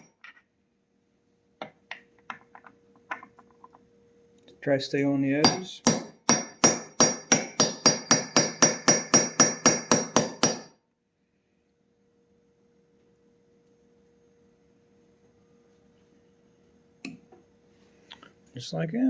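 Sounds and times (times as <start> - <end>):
faint steady hum: 0.0 - 19.0
hammer tapping on metal: 5.4 - 10.7.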